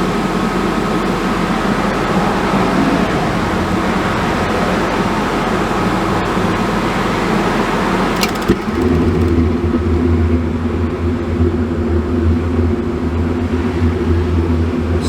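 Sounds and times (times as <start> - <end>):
highway road noise: 0.0 - 15.0
blower fan motor humming: 3.3 - 9.8.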